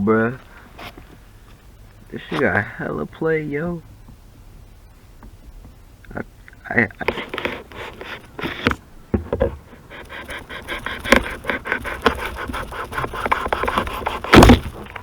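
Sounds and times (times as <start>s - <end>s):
rubbing strokes on body filler: 7.1s - 8.7s, 9.8s - 15.0s.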